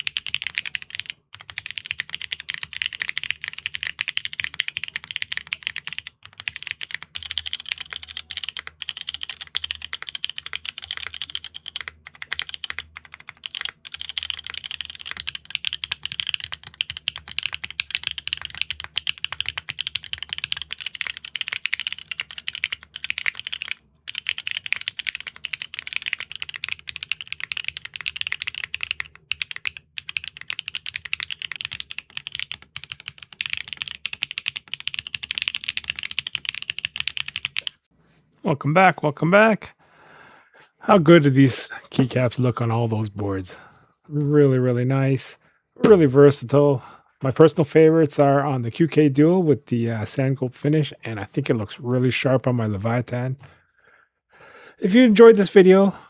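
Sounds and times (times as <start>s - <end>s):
mechanical keyboard typing: 0.0s - 37.8s.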